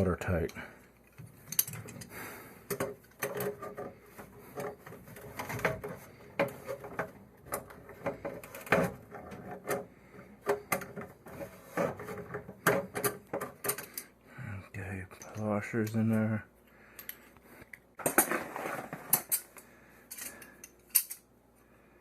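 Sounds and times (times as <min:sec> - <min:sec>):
pliers clinking on brass fittings: 0:00.4 - 0:02.1, 0:19.2 - 0:21.3.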